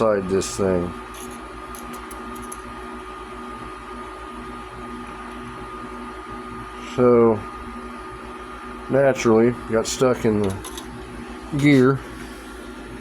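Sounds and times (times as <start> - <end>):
background hum: 0.0 - 5.2.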